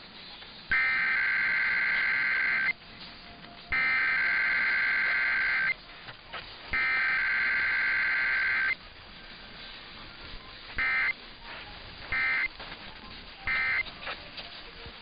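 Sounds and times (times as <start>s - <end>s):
two-tone digital data screech: 0.7s - 2.7s, 3.7s - 5.8s, 6.8s - 8.8s, 10.8s - 11.2s, 12.1s - 12.5s, 13.5s - 13.8s.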